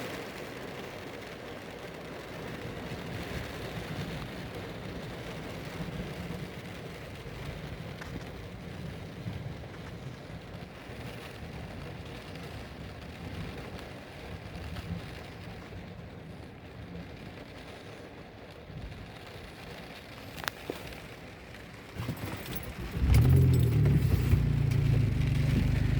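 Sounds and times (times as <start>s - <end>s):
steady rain: 0.0s - 25.9s
thunder rumble: 21.5s - 25.9s.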